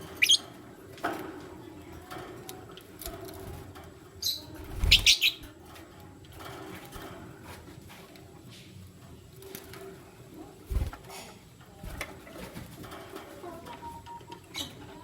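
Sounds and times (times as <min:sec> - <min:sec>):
birds chirping: 0:00.0 - 0:05.6, 0:13.1 - 0:15.0
wings fluttering: 0:03.0 - 0:05.8, 0:09.4 - 0:13.7.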